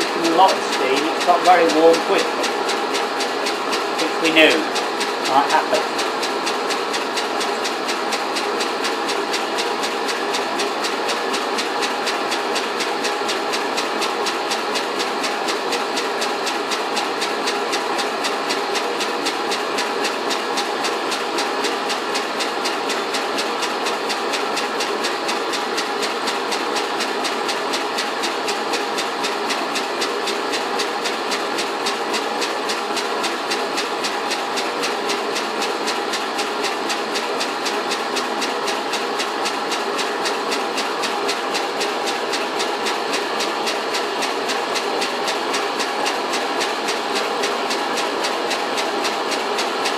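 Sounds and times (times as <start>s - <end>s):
steam engine exhaust chuffs: 0.0s - 7.5s.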